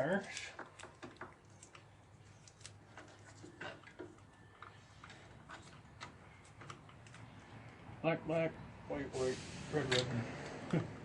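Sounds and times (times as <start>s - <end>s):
tape peeling crackles: 0.0s - 4.4s.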